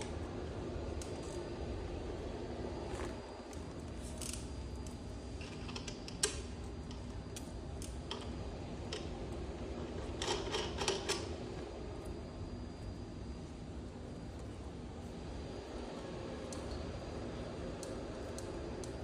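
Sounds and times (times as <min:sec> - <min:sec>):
steady low hum: 0:00.0 - 0:19.0
small parts and tools clicking: 0:04.2 - 0:09.1, 0:10.1 - 0:11.3.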